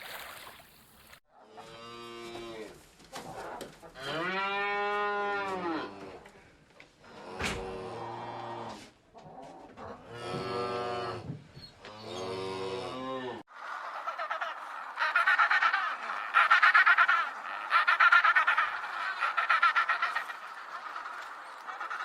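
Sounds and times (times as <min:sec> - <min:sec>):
waterfowl honking and quacking: 0:13.6 - 0:22.0.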